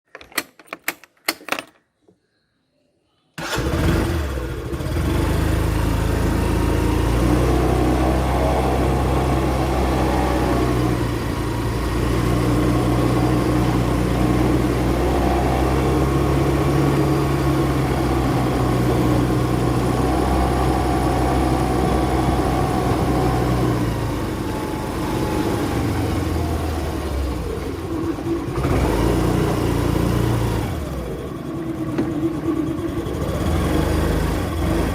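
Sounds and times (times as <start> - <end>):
scooter engine running: 3.4 - 34.9.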